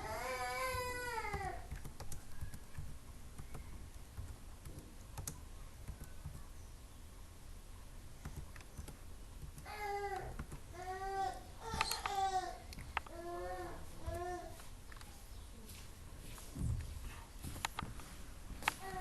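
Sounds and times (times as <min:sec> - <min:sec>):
keyboard and mouse clicks: 0:00.7 - 0:06.5, 0:08.2 - 0:10.7, 0:11.7 - 0:13.2, 0:14.9 - 0:15.1, 0:17.6 - 0:17.9.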